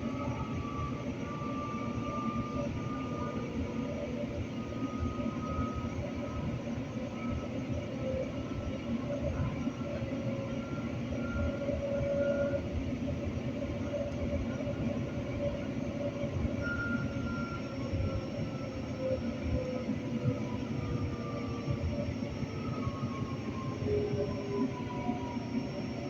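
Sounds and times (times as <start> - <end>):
thin whining tones: 0.0 - 26.0.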